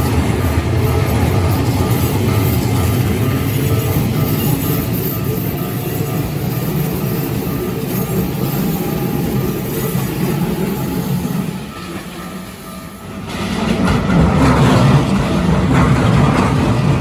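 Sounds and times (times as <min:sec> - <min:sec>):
electric train passing: 0:00.0 - 0:17.0.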